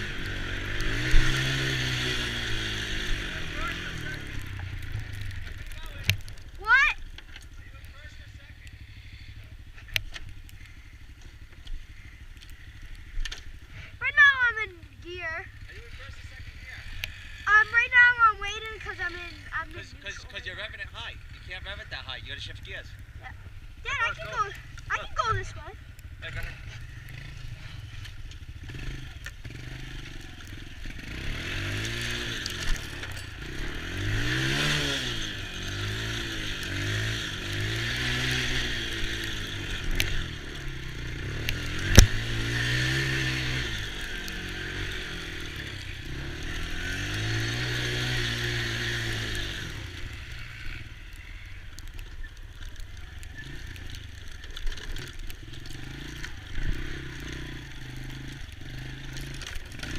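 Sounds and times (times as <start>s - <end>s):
small atv engine revving: 0.0s - 7.1s, 8.6s - 59.9s.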